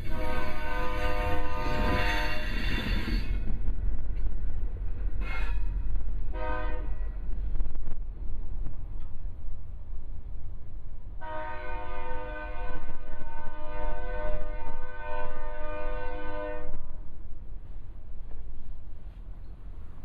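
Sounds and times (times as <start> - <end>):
locomotive air horn blast: 0.0 - 2.6, 5.2 - 7.1, 11.2 - 16.8
wind buffeting microphone: 0.0 - 11.2.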